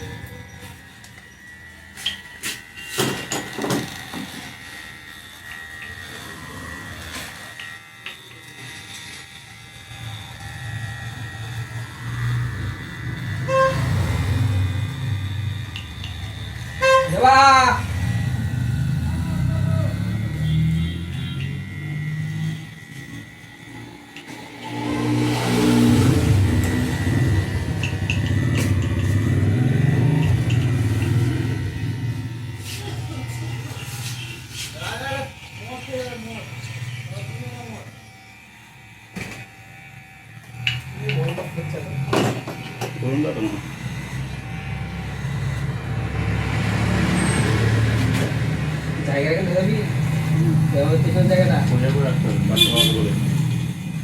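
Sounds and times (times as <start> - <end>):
vehicle engine revving: 12.0 - 16.8, 24.5 - 34.9, 43.0 - 54.0
vehicle engine rumble: 25.2 - 34.6.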